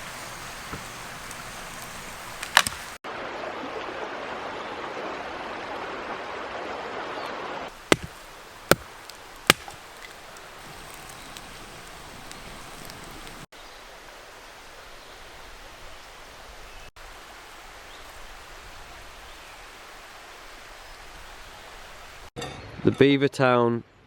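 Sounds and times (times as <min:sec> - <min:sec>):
campfire hissing: 0:00.0 - 0:03.0, 0:07.7 - 0:14.1
fire popping: 0:00.0 - 0:03.0, 0:07.7 - 0:13.5.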